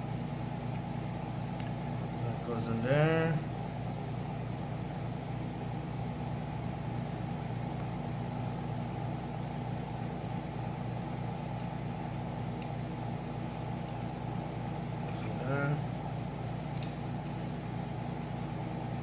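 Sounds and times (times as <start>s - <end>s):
air conditioner humming: 0.0s - 19.0s.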